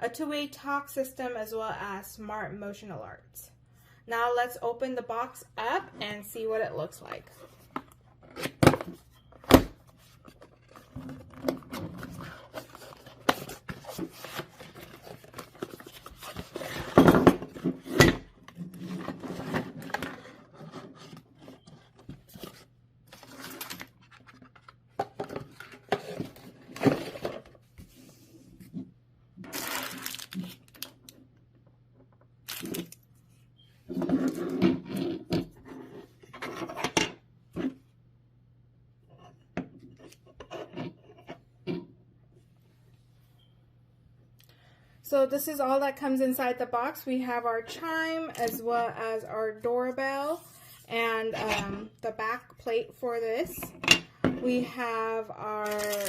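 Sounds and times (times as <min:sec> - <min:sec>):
packaging rubbing and tearing: 0:29.5 - 0:30.9.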